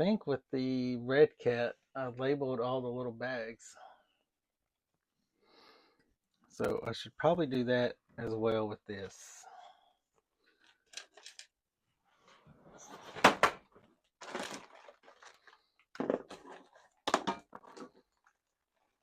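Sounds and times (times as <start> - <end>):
objects knocking and clattering: 13.0 - 15.2, 15.9 - 18.3.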